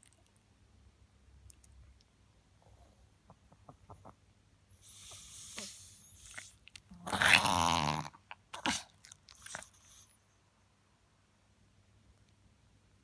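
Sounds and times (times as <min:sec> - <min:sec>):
dog reverse sneezing snorts: 0:04.9 - 0:06.5.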